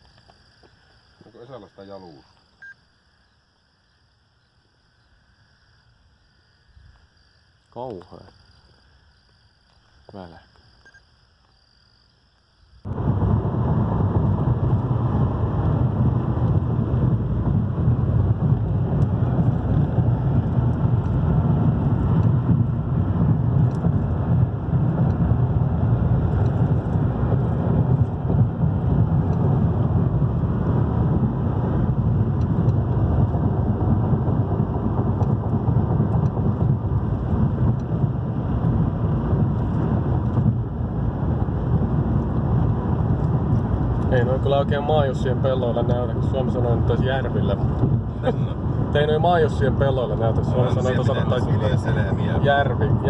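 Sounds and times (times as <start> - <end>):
rain on car: 12.9 - 53.0
road noise: 12.9 - 53.0.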